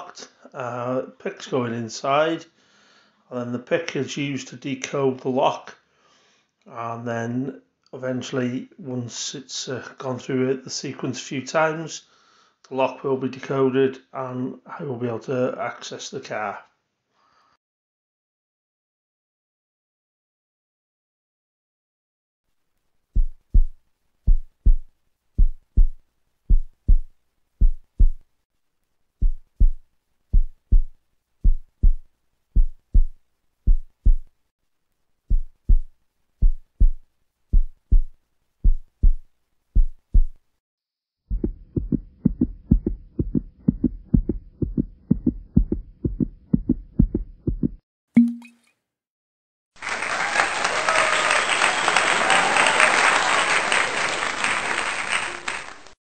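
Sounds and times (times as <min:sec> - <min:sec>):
heartbeat thumps: 0:23.2 - 0:28.2, 0:29.2 - 0:34.3, 0:35.3 - 0:40.4, 0:41.3 - 0:47.8
short tone: 0:48.2 - 0:48.7
applause: 0:49.8 - 0:56.0.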